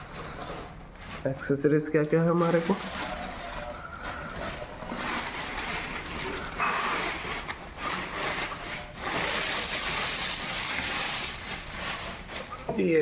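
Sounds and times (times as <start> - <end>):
packaging rustling and scraping: 0.0 - 13.0.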